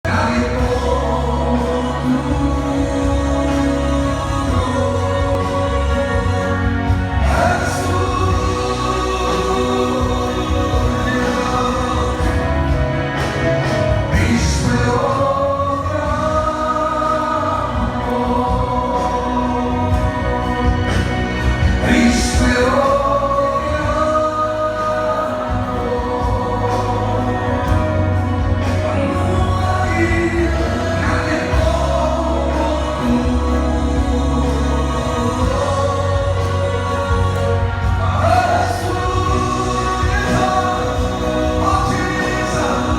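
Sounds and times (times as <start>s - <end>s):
group of voices singing: 0.0s - 42.9s
instrumental backing with heavy bass: 0.0s - 42.9s.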